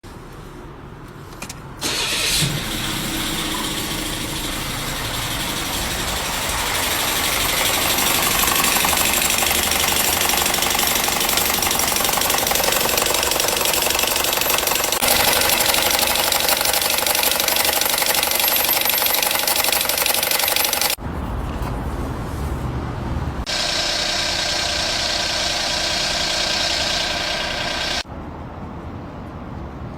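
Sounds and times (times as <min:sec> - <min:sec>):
abnormal mechanical engine noise: 0:00.1 - 0:29.8
car engine starting: 0:01.8 - 0:21.0, 0:23.4 - 0:28.0.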